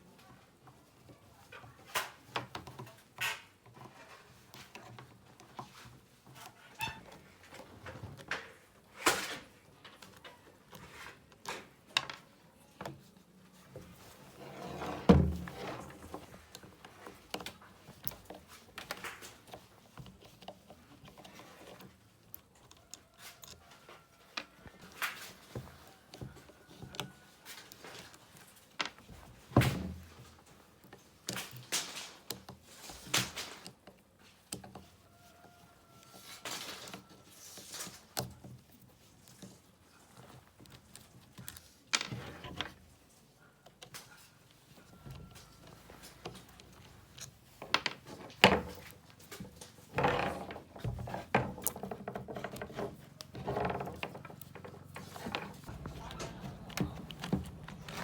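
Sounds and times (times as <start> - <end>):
tools clicking and knocking: 45.0 - 58.0.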